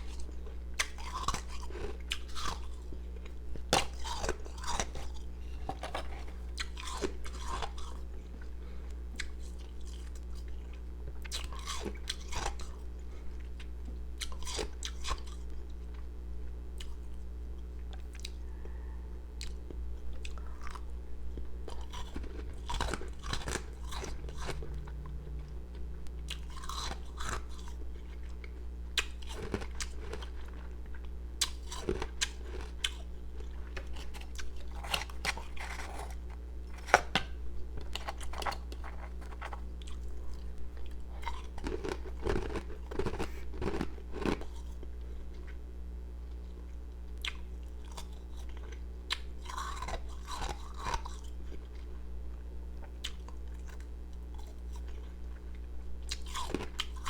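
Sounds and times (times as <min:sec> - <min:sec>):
low hum: 0:15.5 - 0:31.5
person crunching ice: 0:26.4 - 0:28.2, 0:33.9 - 0:37.2, 0:37.8 - 0:39.9, 0:41.3 - 0:44.6.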